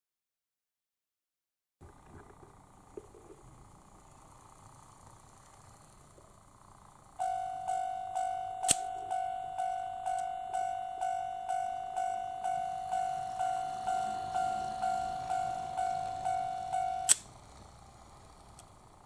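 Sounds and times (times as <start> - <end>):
crossing warning bell dinging: 7.2 - 17.3
sharp click: 8.6 - 9.0, 17.0 - 17.3.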